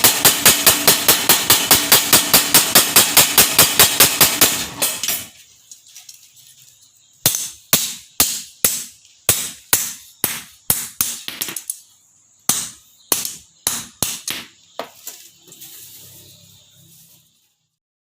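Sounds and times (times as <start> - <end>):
hammer ringing on metal: 0.0 - 4.7.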